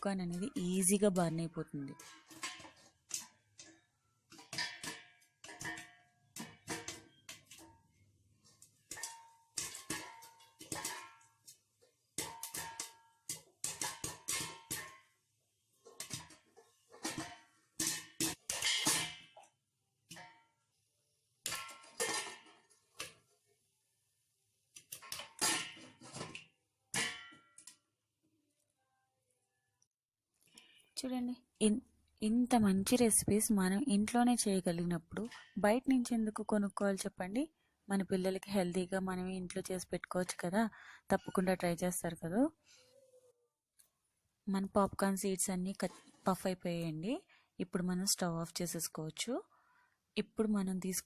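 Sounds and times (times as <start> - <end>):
popcorn popping in covered pan: 0.0 - 20.6, 21.4 - 23.4, 24.7 - 27.8.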